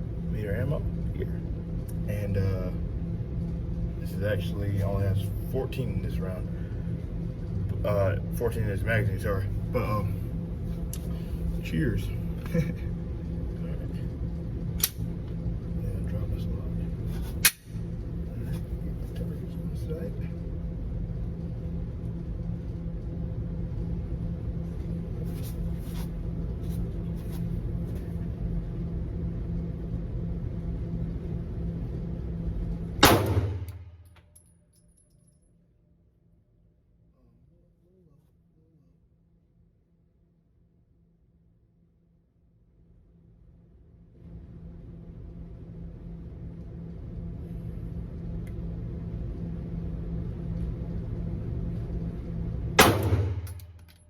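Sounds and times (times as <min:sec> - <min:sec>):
steady low hum: 0:00.0 - 0:54.0
steady low rumble: 0:00.0 - 0:54.0
pistol shot: 0:33.0 - 0:33.8, 0:52.8 - 0:53.7.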